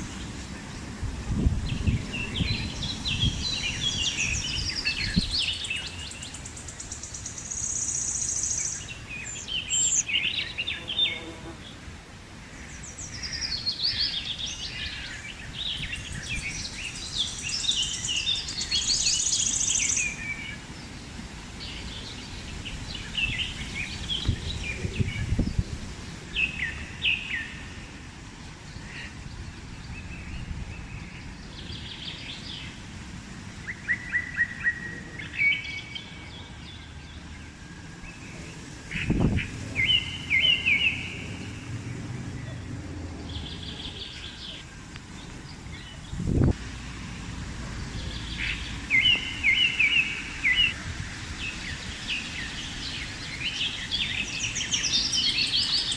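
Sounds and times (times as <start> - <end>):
wind buffeting microphone: 0.0 - 7.5, 11.9 - 55.9
birds chirping and calling: 12.6 - 21.0, 33.7 - 46.6, 47.8 - 55.9.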